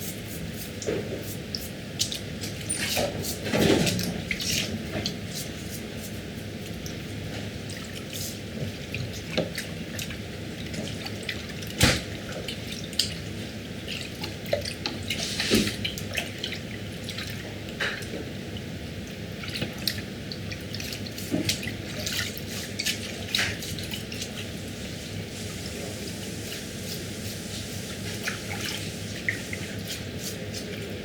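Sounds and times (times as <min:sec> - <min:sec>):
water dripping and splashing: 0:07.6 - 0:31.0.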